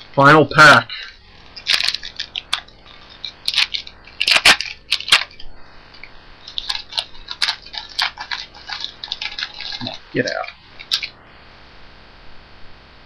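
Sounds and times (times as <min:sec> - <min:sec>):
wrapper tearing and crinkling: 0:01.3 - 0:05.4, 0:06.4 - 0:11.2.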